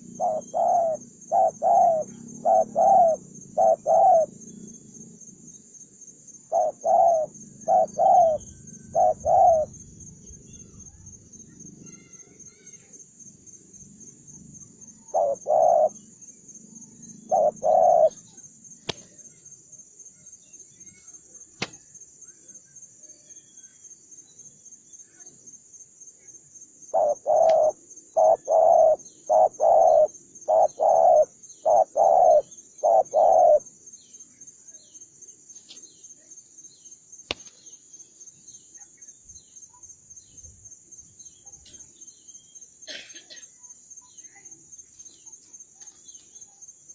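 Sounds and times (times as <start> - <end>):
dove cooing: 0.0 - 4.4, 6.5 - 9.8, 15.1 - 16.0, 17.2 - 18.2, 26.9 - 33.7.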